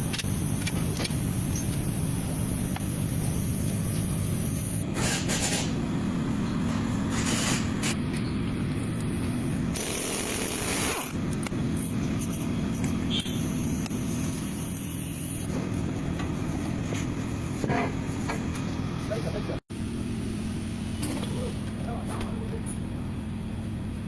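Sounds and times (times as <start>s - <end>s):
short hissing noises: 11.8s - 15.5s.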